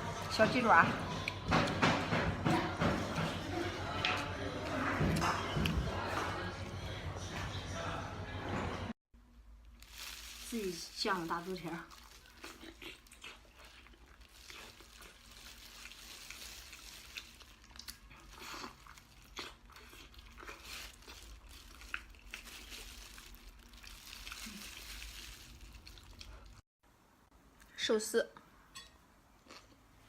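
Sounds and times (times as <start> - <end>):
crinkling: 9.6 - 19.0, 20.3 - 26.6
person biting and chewing: 11.9 - 25.0.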